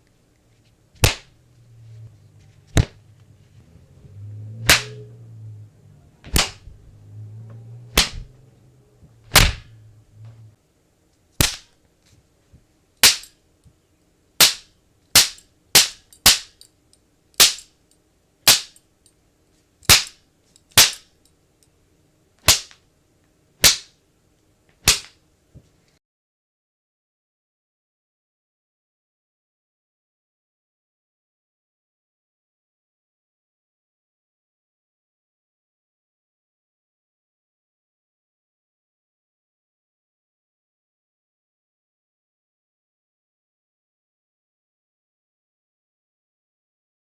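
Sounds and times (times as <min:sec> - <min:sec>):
low hum: 0:00.3 - 0:10.6
whip cracks: 0:01.0 - 0:01.3, 0:04.6 - 0:05.1, 0:06.3 - 0:06.7, 0:07.9 - 0:08.3, 0:09.3 - 0:09.8, 0:11.4 - 0:11.7, 0:13.0 - 0:13.3, 0:14.4 - 0:16.6, 0:17.4 - 0:17.7, 0:18.5 - 0:18.8, 0:19.9 - 0:20.2, 0:20.8 - 0:21.1, 0:22.4 - 0:22.8, 0:23.6 - 0:24.0, 0:24.8 - 0:25.2.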